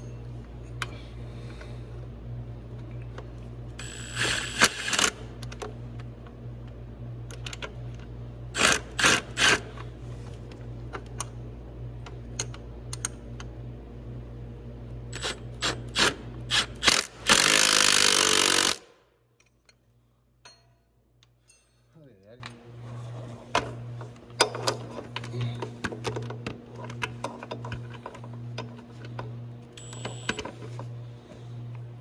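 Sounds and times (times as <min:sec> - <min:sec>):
steady low hum: 0:00.0 - 0:32.0
ratchet clicks: 0:15.2 - 0:18.8
metal tool clinks: 0:21.4 - 0:22.0.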